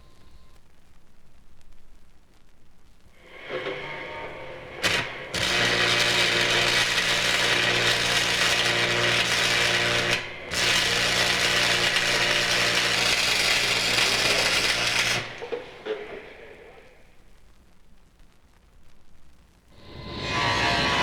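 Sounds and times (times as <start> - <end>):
machine humming and hissing: 3.2 - 17.2, 19.8 - 21.0.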